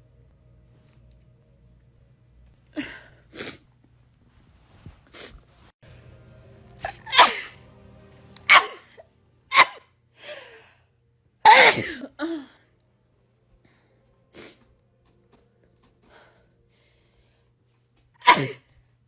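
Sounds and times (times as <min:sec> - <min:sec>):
person sneezing: 0:02.8 - 0:03.6, 0:06.8 - 0:07.5, 0:08.5 - 0:08.9, 0:09.5 - 0:09.8, 0:11.5 - 0:12.5, 0:18.2 - 0:18.6.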